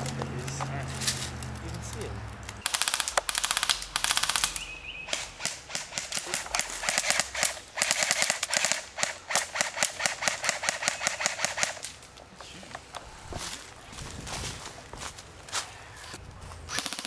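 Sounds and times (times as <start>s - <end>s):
airsoft guns firing full auto: 2.6s - 11.9s, 16.7s - 17.0s.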